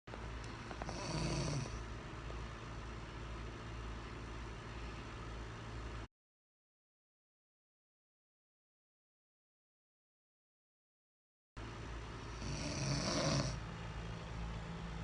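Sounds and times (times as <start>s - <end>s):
man snoring: 0.7s - 1.8s, 12.3s - 13.6s.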